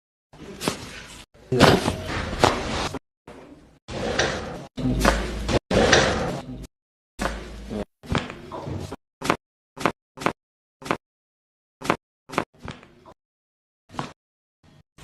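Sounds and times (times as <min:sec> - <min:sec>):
sharp pops and slaps: 0:09.2 - 0:11.0, 0:11.8 - 0:12.7.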